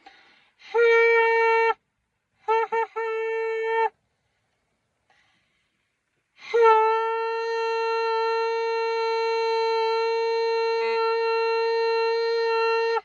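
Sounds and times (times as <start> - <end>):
person imitating train horn: 2.4 - 3.9, 6.4 - 13.0.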